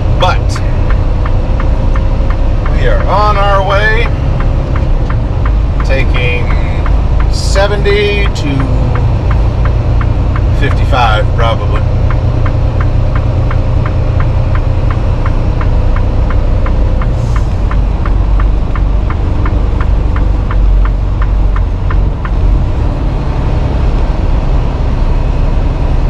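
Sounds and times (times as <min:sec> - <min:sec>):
diesel engine rumble: 0:00.0 - 0:26.0
road noise: 0:00.0 - 0:26.0
turn signal ticking: 0:00.0 - 0:26.0.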